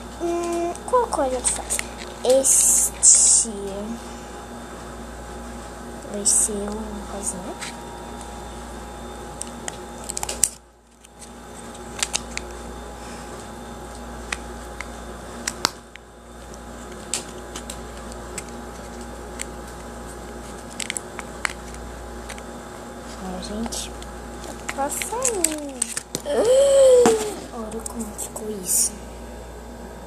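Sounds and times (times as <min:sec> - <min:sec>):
steady electrical hum: 0:00.0 - 0:30.0.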